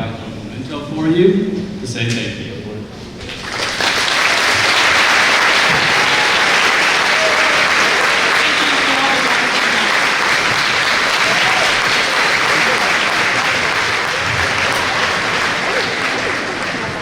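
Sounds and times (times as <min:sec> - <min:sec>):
crowd applauding: 0:03.2 - 0:17.0
faint voices: 0:04.5 - 0:17.0.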